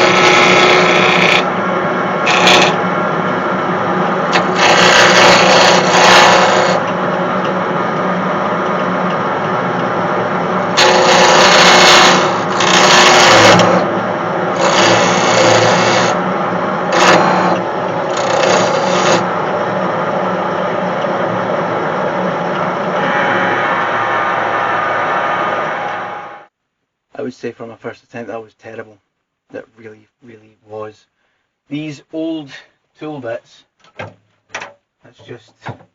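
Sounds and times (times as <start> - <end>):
gouge scraping spinning wood: 0.0 - 1.6, 2.2 - 3.1, 4.3 - 7.5, 10.7 - 23.2
wood lathe running: 0.0 - 26.1.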